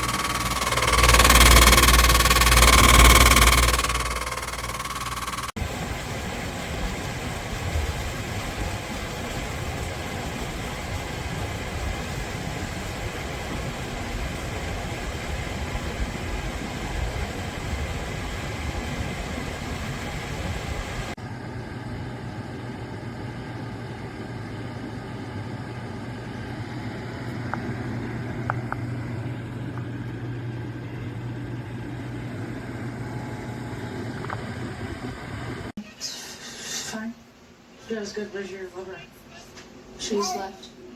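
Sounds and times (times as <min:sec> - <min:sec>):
air conditioner humming: 0:00.0 - 0:36.0, 0:37.0 - 0:40.9.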